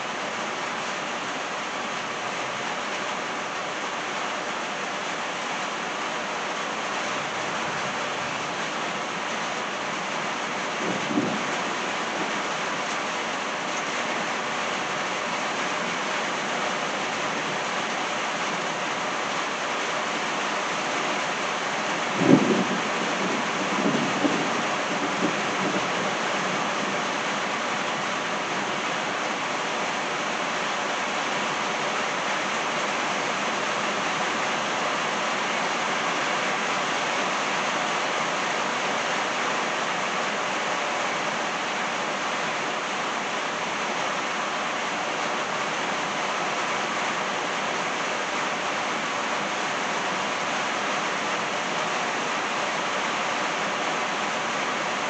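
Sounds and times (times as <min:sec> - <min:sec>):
steady rain: 0:00.0 - 0:55.0
thunder clap and rumble: 0:10.6 - 0:12.5, 0:22.0 - 0:27.1.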